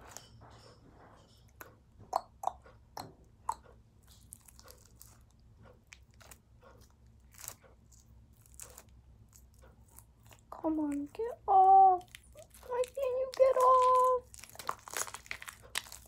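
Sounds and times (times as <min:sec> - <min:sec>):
sticky slime clicking and snapping: 0:12.1 - 0:16.0.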